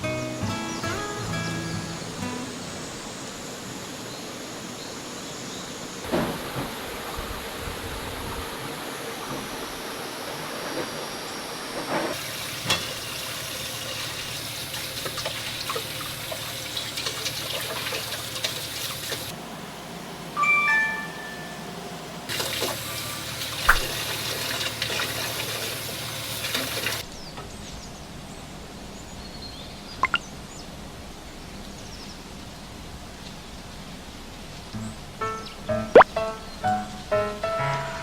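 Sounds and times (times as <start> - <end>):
running water rushing: 1.7 - 19.4, 22.3 - 27.0.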